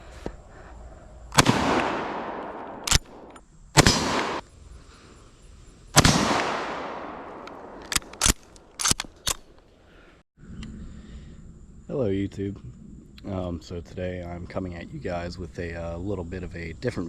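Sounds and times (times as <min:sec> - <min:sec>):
rifle shots echoing: 0:01.3 - 0:04.4, 0:05.9 - 0:09.0
rifle bolt clicks: 0:01.4 - 0:03.4, 0:07.2 - 0:09.6.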